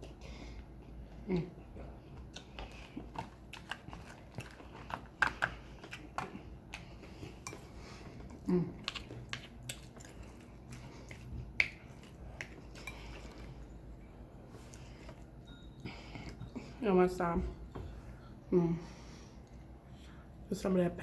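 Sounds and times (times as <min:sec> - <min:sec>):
chewing with wet mouth clicks: 0:00.8 - 0:15.3
person humming: 0:08.5 - 0:08.8, 0:18.5 - 0:18.8.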